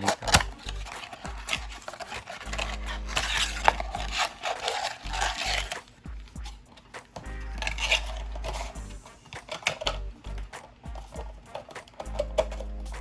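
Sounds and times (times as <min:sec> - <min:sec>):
box crinkling and tearing: 0:00.0 - 0:05.9.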